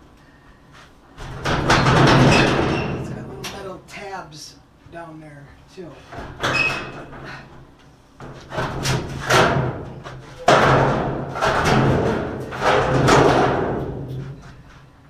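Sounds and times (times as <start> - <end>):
sheet metal panel scraping and rattling: 8.2 - 14.6.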